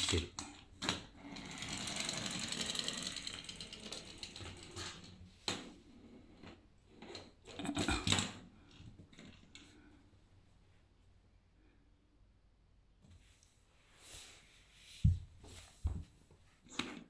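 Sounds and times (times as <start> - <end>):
toy motor whirring: 1.4 - 5.0
sharp knocks and scuffs: 15.0 - 16.3.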